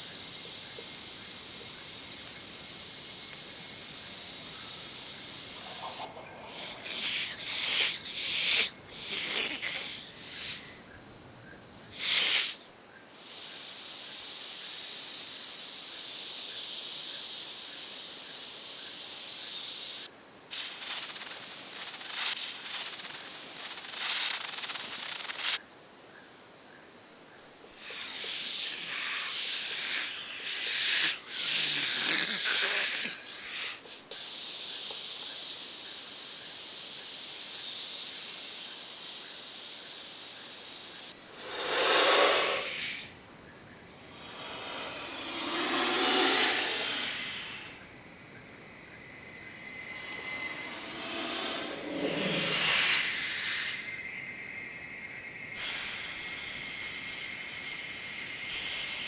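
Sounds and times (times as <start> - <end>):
snakes hissing: 0.0 - 25.6, 27.8 - 59.0.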